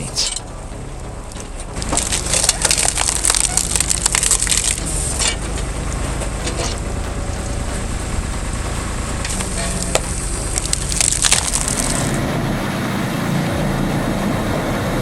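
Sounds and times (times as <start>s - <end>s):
diesel engine droning: 0.0s - 15.0s
wood cracking and splintering: 1.2s - 7.2s, 9.2s - 12.2s.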